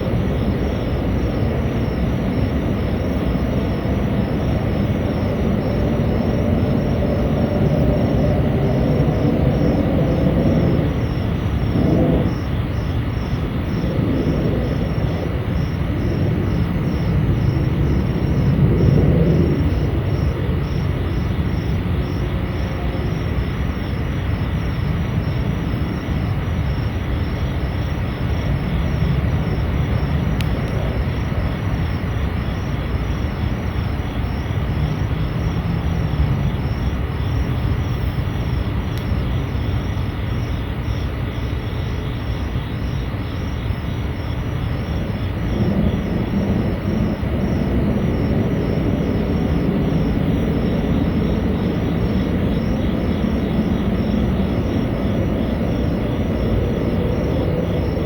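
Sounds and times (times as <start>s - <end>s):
low rumbling drone: 0.0s - 23.8s, 44.4s - 58.0s.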